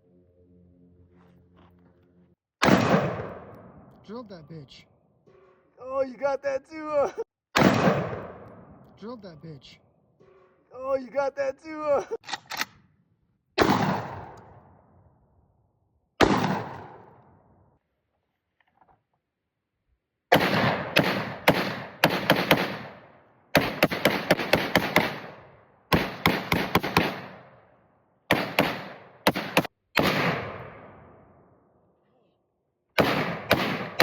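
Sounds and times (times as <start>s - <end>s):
gunshots with echoing tail: 2.6s - 4.0s, 7.6s - 8.9s, 13.6s - 15.2s, 16.2s - 17.6s, 20.3s - 31.6s, 33.0s - 34.0s.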